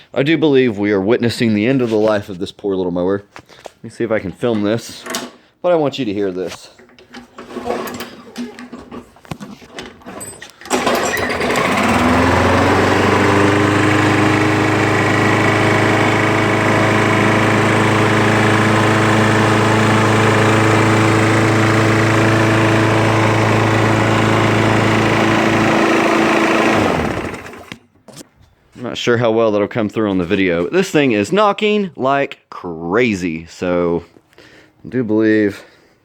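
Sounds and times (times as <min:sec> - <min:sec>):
mower engine running and knocking: 0:10.7 - 0:27.8.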